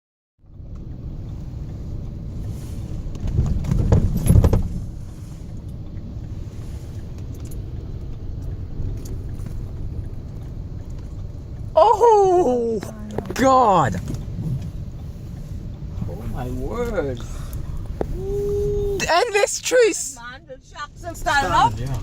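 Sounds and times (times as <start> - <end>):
car engine and road noise: 0.4 - 22.0.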